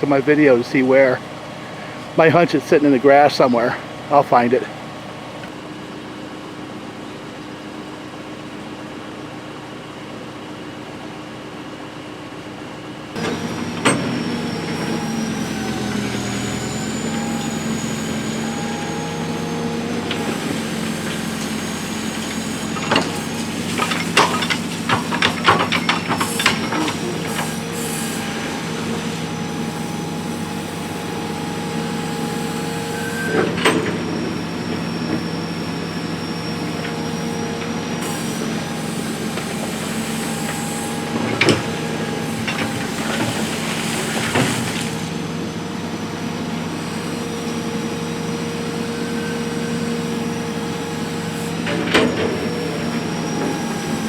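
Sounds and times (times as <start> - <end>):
backhoe diesel engine running: 0.0 - 54.0
hydraulic whine: 12.3 - 54.0.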